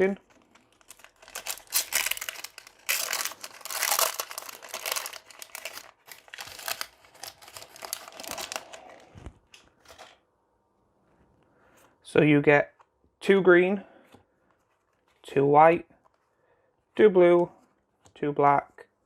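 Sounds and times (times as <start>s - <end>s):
plastic wrapping crinkling: 0.0s - 9.2s.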